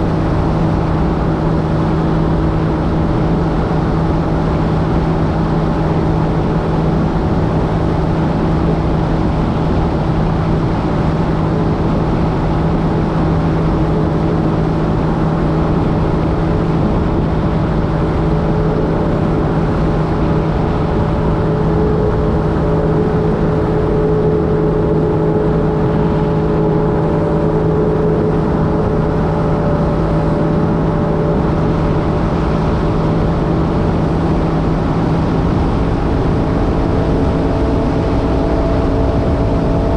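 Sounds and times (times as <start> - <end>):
jet ski engine humming: 0.0 - 39.9
wind and water rushing: 0.0 - 39.9.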